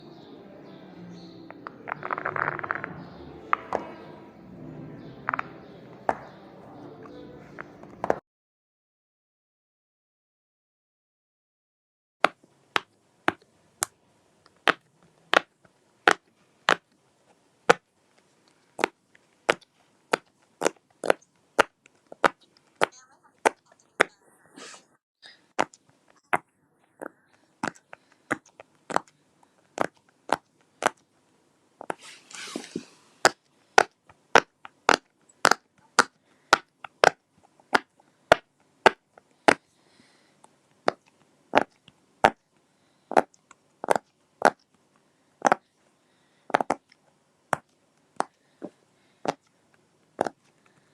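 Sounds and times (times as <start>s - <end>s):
fidget toy popping: 12.2s - 13.9s, 14.5s - 16.9s, 17.6s - 17.9s, 18.8s - 24.2s, 25.6s - 29.1s, 29.7s - 31.0s, 31.8s - 39.7s, 40.8s - 42.4s, 43.1s - 44.6s, 45.4s - 45.6s, 46.5s - 46.9s, 47.5s - 48.4s, 50.2s - 50.4s
short rustling: 31.9s - 33.2s.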